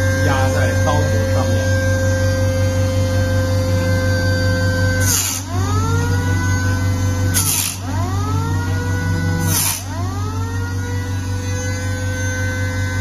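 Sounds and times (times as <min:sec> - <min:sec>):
air motor whining: 0:00.0 - 0:13.0.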